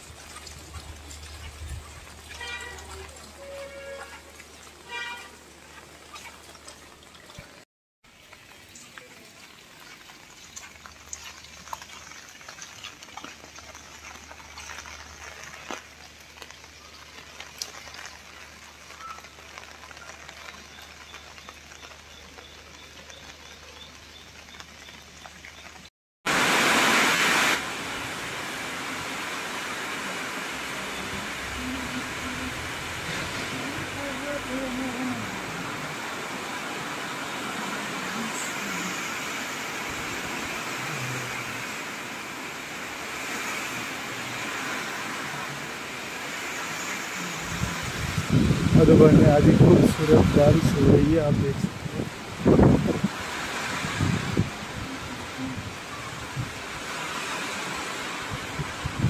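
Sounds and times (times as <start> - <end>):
raindrops tapping: 0.0 - 27.0
rain falling: 0.0 - 59.0.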